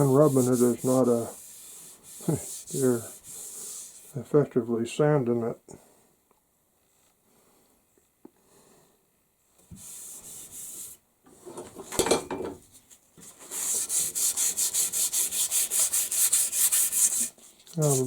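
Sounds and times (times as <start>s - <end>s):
sandpaper rubbing on wood: 0.0s - 4.2s, 13.4s - 18.0s.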